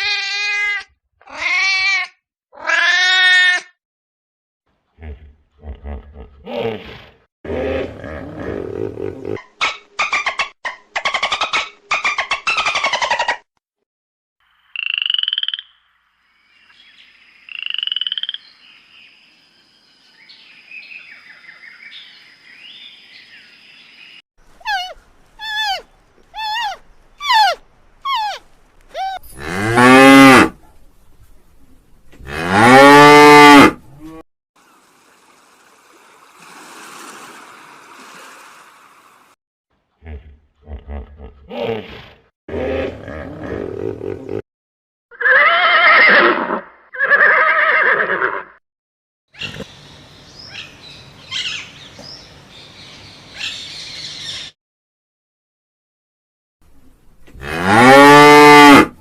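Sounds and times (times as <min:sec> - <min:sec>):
rough animal calls: 0:24.5 - 0:30.6
short falling animal calls: 0:24.6 - 0:29.2
cow mooing: 0:29.4 - 0:30.6, 0:32.2 - 0:34.2, 0:57.4 - 0:59.0.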